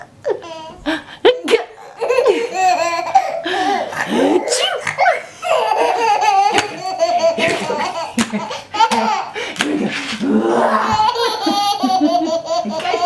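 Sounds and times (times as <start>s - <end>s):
baby laughing: 0.2s - 4.3s, 4.9s - 9.8s, 10.8s - 13.0s
woman fake sneezing: 1.3s - 1.8s, 4.4s - 5.2s.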